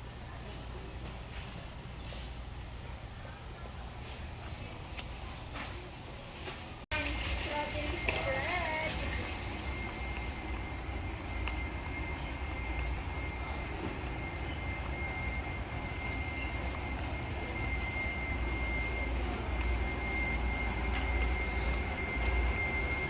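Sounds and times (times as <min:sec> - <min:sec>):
high-pitched whine: 0:08.1 - 0:23.0.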